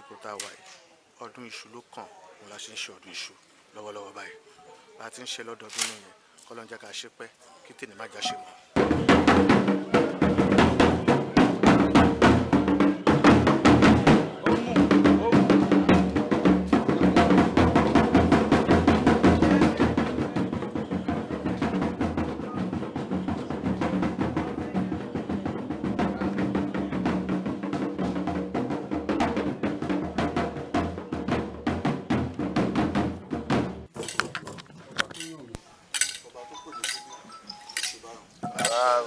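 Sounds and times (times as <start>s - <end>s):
pitched musical backing: 8.2s - 34.2s, 36.0s - 39.0s
drums playing fast rhythm: 8.2s - 34.4s, 35.2s - 39.0s.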